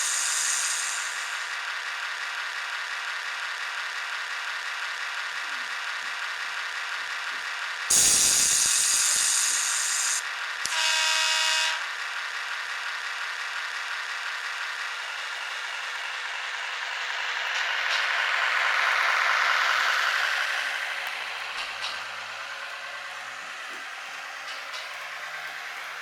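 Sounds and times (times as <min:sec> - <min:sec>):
loud hiss: 0:00.0 - 0:01.6, 0:07.9 - 0:10.8
diesel engine running: 0:00.0 - 0:10.7, 0:11.5 - 0:26.0
train horn blast: 0:10.7 - 0:11.9.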